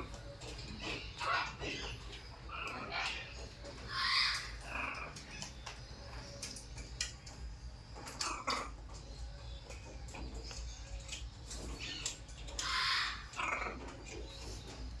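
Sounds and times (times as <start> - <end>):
parrot squawking: 0.8 - 5.5, 11.8 - 14.0.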